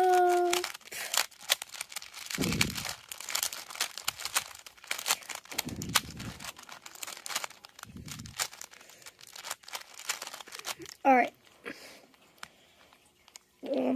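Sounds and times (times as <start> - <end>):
plastic puzzle cube clicking: 0.0 - 11.0.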